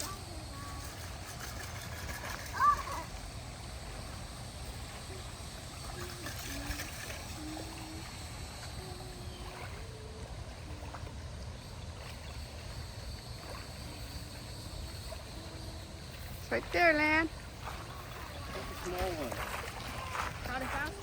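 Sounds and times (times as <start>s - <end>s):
flowing water rushing: 0.0s - 21.0s.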